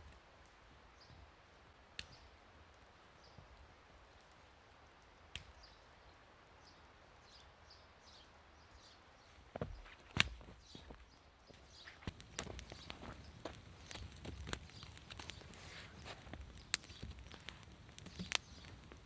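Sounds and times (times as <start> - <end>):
sharp clicks: 16.3 - 18.8.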